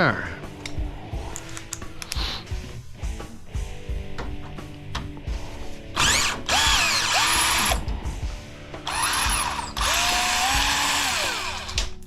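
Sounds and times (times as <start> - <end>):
power drill whining: 6.0 - 7.8, 8.8 - 12.0.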